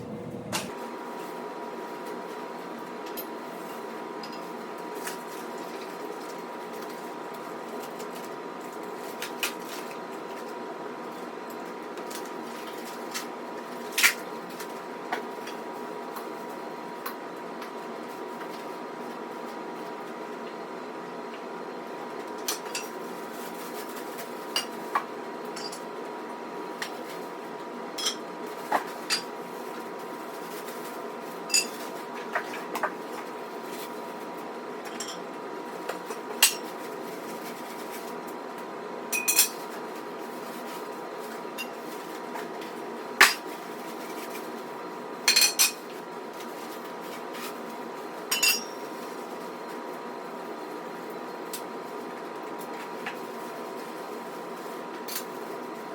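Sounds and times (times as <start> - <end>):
steady hum with faint tone: 0.0 - 2.0.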